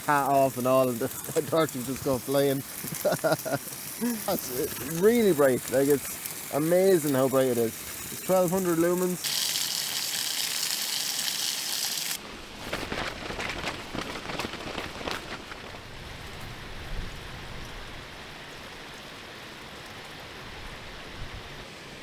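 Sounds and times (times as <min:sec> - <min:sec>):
bright hiss: 0:00.0 - 0:12.2
raindrops pattering on tarp: 0:00.0 - 0:17.4
wind and rain: 0:00.0 - 0:22.0.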